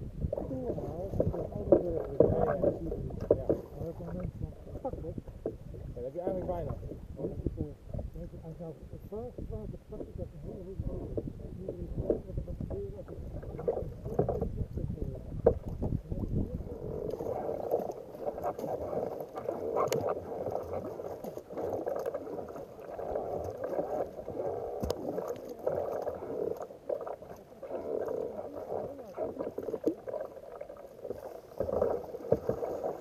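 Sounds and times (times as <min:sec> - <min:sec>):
low rumble: 0:00.0 - 0:18.9
water sloshing from paddling: 0:00.0 - 0:33.0.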